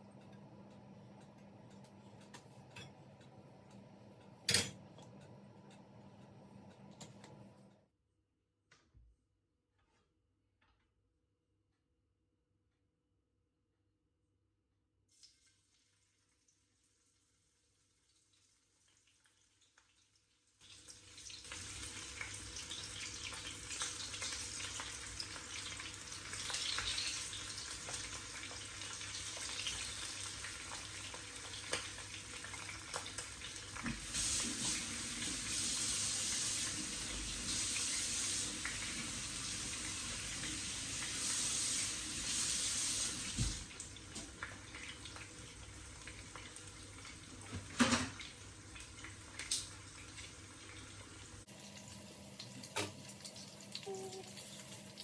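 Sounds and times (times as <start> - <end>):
tap water running into sink: 20.7 - 55.0.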